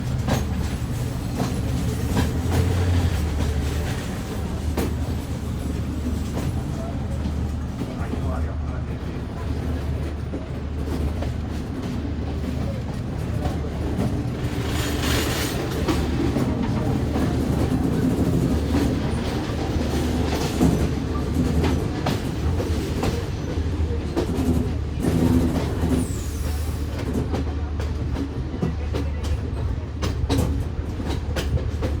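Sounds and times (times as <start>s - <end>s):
wheels clicking over rail joints: 0.0s - 7.6s
train rumbling on rails: 0.0s - 32.0s.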